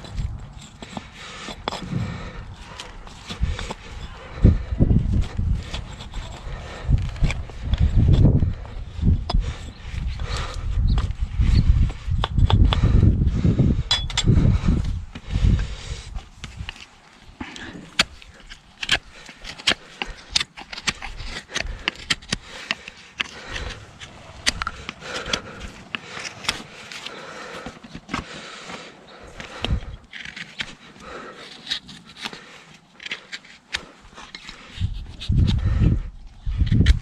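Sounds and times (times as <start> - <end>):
scraping hoof: 0.0 - 8.6, 17.4 - 35.6
hoof trimming snips and clicks: 5.2 - 12.8, 16.4 - 35.6, 36.2 - 37.0.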